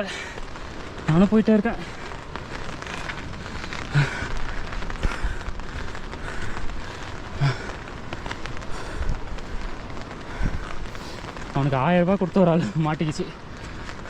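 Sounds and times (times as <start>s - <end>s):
rain patter: 0.0s - 14.0s.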